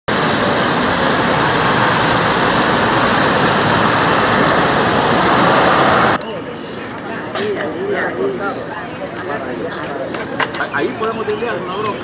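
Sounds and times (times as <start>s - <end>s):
loud steady rushing noise: 0.1s - 6.2s.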